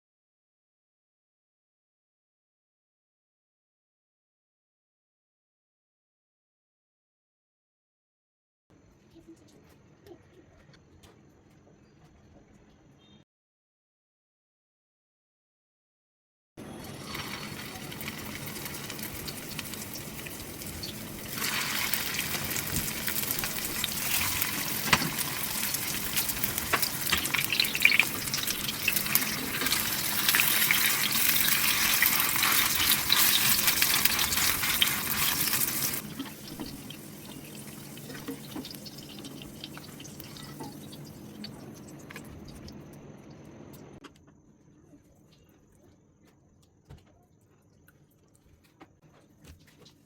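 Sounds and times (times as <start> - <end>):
food sizzling in hot oil: 16.6 - 41.7.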